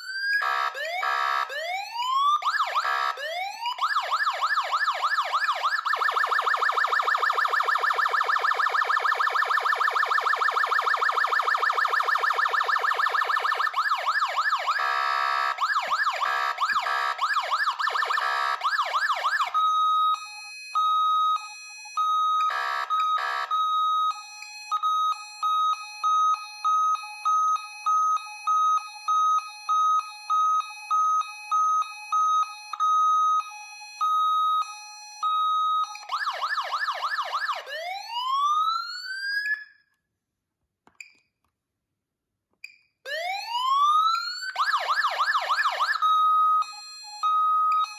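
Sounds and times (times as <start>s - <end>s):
electronic siren: 0.0s - 39.8s, 43.1s - 47.9s.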